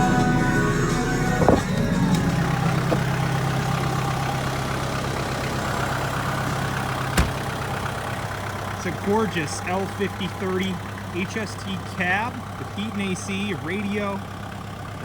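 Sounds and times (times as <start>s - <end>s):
music: 0.0s - 4.3s
tractor diesel engine idling: 0.0s - 15.0s.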